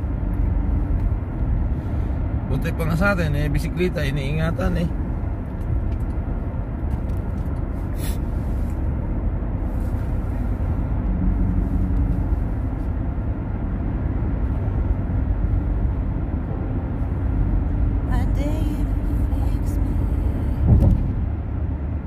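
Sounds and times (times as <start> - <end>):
engine and road noise in cabin: 0.0 - 22.0.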